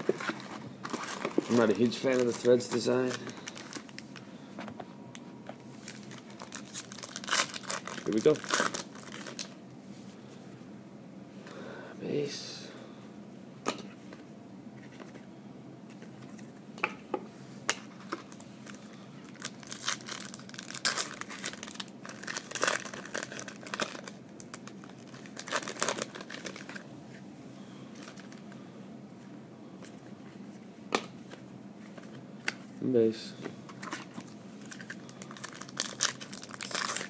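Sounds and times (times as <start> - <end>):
wrappers crinkling and tearing: 0.0 - 4.2, 5.9 - 9.6, 18.3 - 26.8, 33.8 - 37.0.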